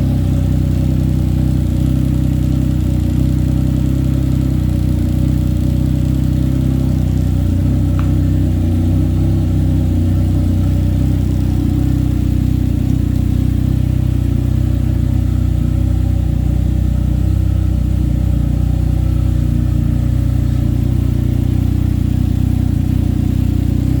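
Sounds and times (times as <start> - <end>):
three-wheeler engine idling: 0.0 - 24.0.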